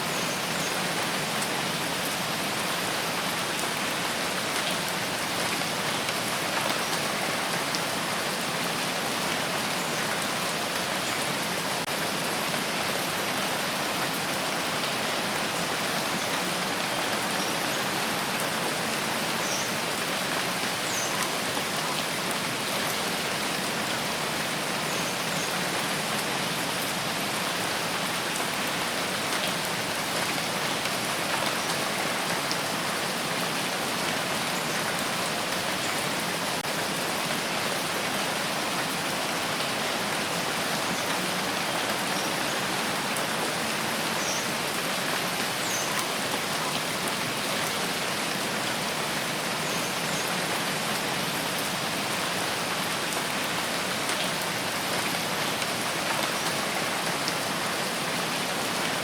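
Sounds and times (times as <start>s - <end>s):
rain pattering: 0.4s - 59.0s.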